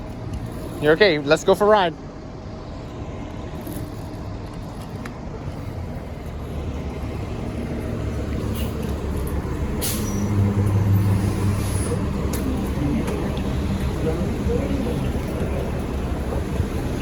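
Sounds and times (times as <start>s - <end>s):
bus engine running: 0.0s - 17.0s
bus air brake hiss: 9.8s - 12.1s.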